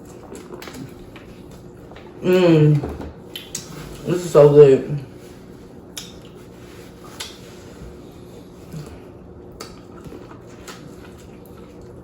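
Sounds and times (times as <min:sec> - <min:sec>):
faint clicks and taps of eating: 0:05.9 - 0:06.4, 0:07.1 - 0:07.5, 0:09.5 - 0:11.9.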